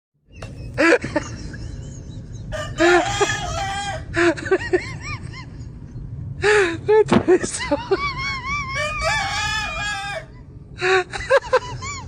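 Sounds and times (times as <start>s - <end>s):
rooster crowing: 2.5s - 4.2s, 8.4s - 10.4s.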